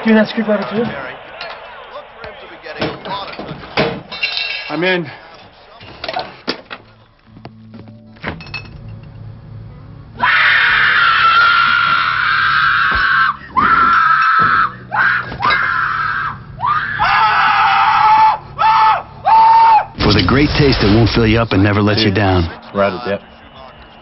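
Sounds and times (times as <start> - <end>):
low steady hum: 6.8 - 10.3
people screaming: 10.2 - 20.0.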